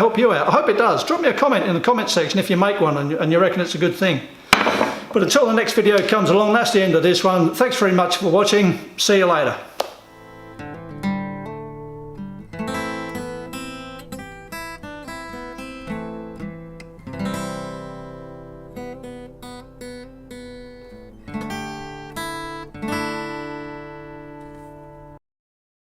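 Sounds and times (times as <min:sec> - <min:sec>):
acoustic guitar picking and strumming: 0:10.1 - 0:25.2.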